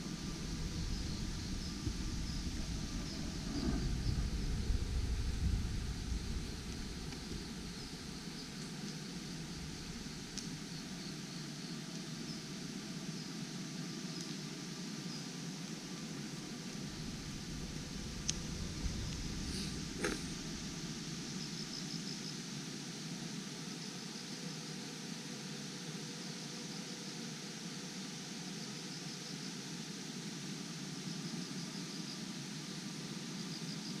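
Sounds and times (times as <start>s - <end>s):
low rumble: 0.0s - 10.7s, 16.3s - 21.5s
steady rushing noise: 0.0s - 10.7s, 15.9s - 21.9s
high-pitched insect chirping: 0.0s - 22.4s.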